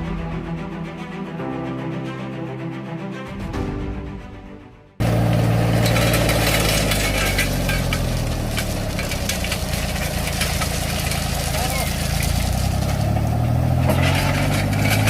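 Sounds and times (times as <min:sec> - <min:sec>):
theme music: 0:00.0 - 0:06.6
engine idling: 0:05.0 - 0:15.0.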